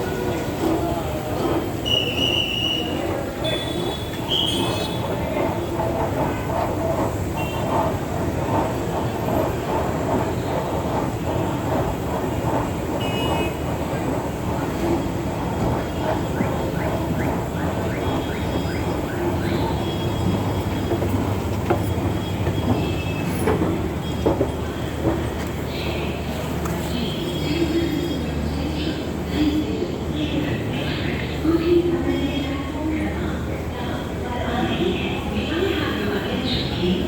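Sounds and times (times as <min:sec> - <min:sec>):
train wheel squeals: 0:00.0 - 0:06.3, 0:07.1 - 0:26.3
railway station hubbub: 0:00.0 - 0:37.0
train rolling on rails: 0:00.0 - 0:37.0.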